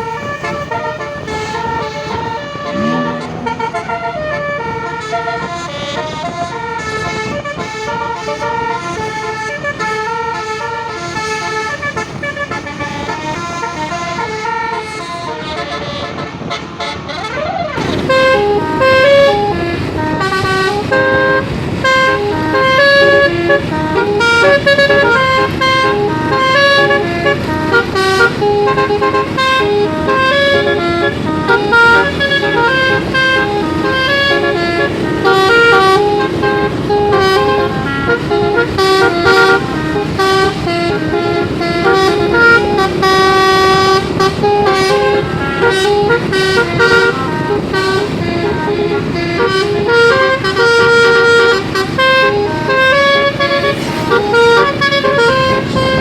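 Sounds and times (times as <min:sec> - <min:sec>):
dull vehicle noise: 0:00.0 - 0:56.0
musical bus horn melody: 0:00.0 - 0:56.0.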